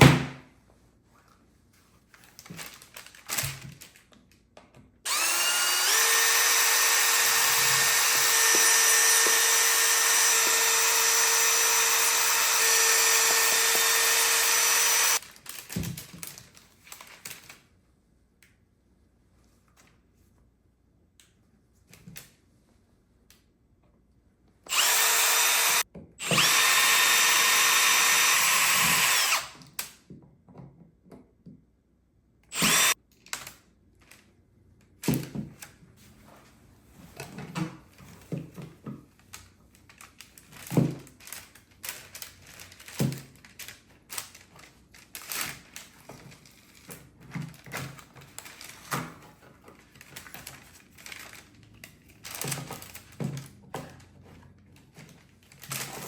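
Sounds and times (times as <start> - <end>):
power drill whining: 5.1 - 15.2, 24.7 - 29.7, 32.5 - 33.0.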